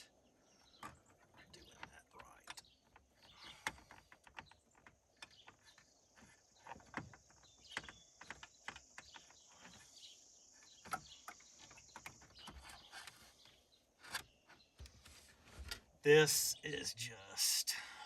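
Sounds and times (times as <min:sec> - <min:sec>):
small parts clicking and tapping: 0:00.6 - 0:10.0.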